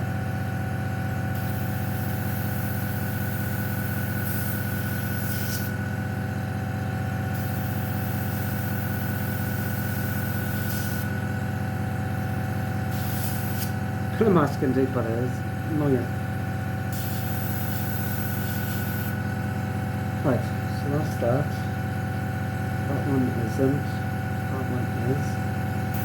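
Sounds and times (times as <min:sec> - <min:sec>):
airbrush compressor humming: 0:00.0 - 0:26.0
airbrush spray hissing: 0:03.6 - 0:05.8, 0:07.3 - 0:11.2, 0:12.9 - 0:13.8, 0:16.9 - 0:19.3.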